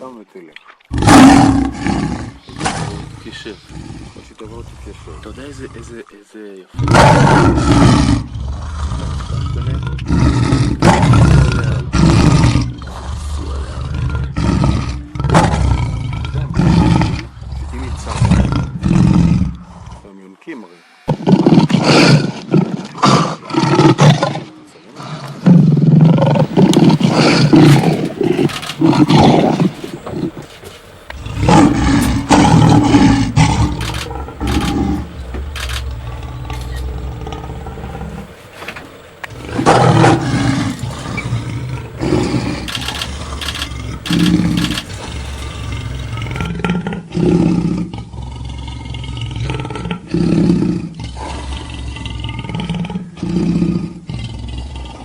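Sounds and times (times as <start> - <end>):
lion roaring and grunting: 0.9 - 6.0, 6.7 - 20.1, 21.1 - 55.0
low hum: 26.4 - 46.6.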